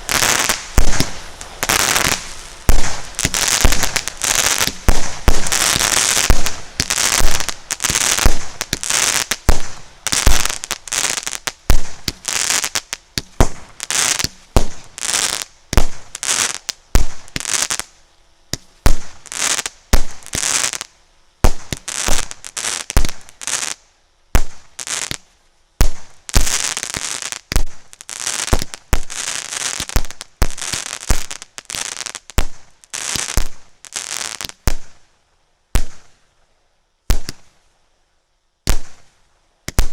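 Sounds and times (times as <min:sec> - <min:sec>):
firework bangs: 0:00.0 - 0:17.8, 0:18.5 - 0:20.8, 0:21.4 - 0:23.7, 0:24.4 - 0:25.2, 0:25.8 - 0:35.0, 0:35.8 - 0:36.2, 0:37.1 - 0:37.5, 0:38.7 - 0:39.1, 0:39.7 - 0:39.9
firework crackling bursts: 0:00.0 - 0:35.1, 0:35.7 - 0:36.3, 0:37.1 - 0:37.7, 0:38.6 - 0:39.9.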